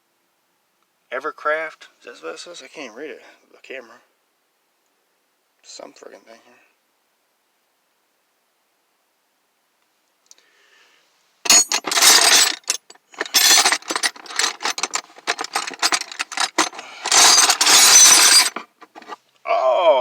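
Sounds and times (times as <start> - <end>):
steel wrenches clattering in drawer: 11.5 - 19.2.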